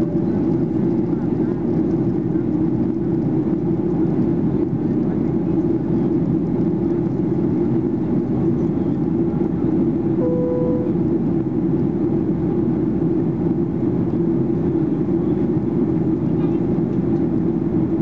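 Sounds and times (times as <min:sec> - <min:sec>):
aircraft cabin engine rushing: 0:00.0 - 0:04.8
cabin chime tone: 0:10.2 - 0:11.0.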